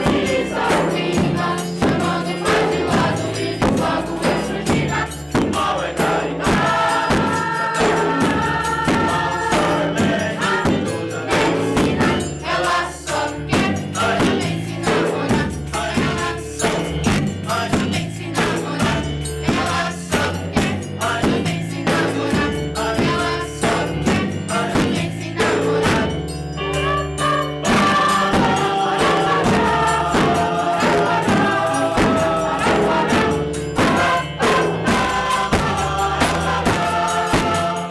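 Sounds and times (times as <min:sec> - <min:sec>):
group singing over instruments: 0:00.0 - 0:37.9
steady beat: 0:27.2 - 0:37.9.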